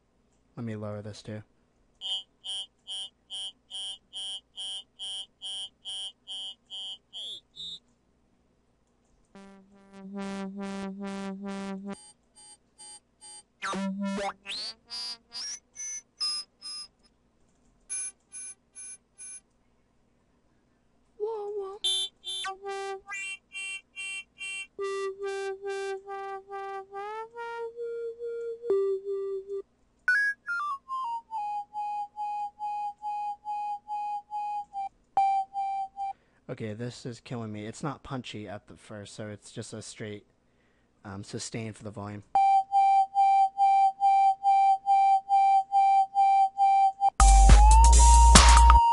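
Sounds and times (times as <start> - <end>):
dubstep synth notes: 9.4 - 12.0.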